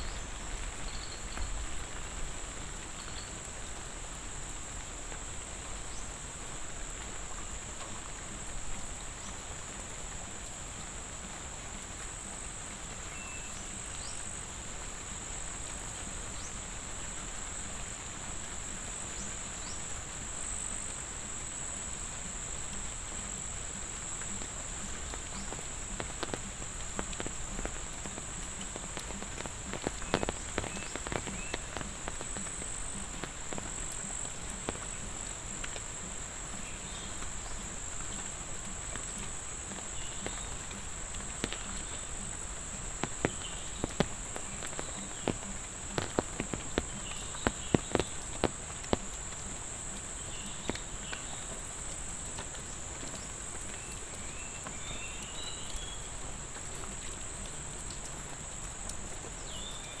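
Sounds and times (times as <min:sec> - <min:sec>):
crickets trilling: 0:00.0 - 1:00.0
light rain patter: 0:00.0 - 1:00.0
faint chirps: 0:24.2 - 0:56.7.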